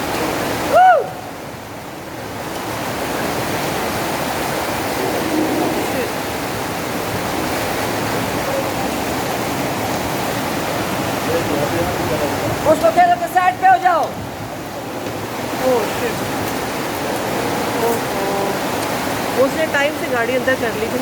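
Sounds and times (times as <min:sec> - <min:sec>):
floodwater rushing: 0:00.0 - 0:21.0
person exclaiming: 0:17.3 - 0:18.6.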